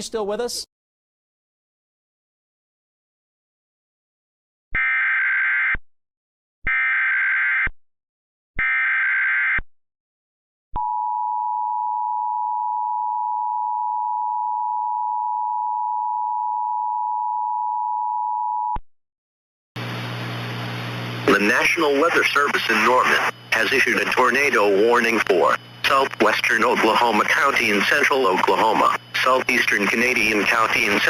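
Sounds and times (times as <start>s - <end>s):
digital data bursts screeching: 21.3s - 31.0s.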